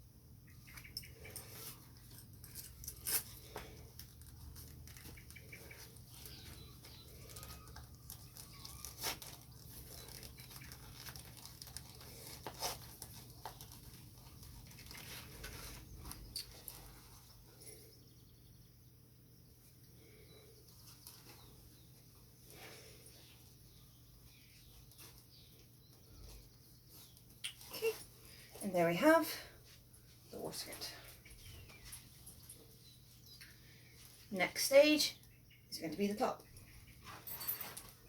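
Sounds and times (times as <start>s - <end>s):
fabric and leather rustling: 1.3s - 17.6s, 36.9s - 38.0s.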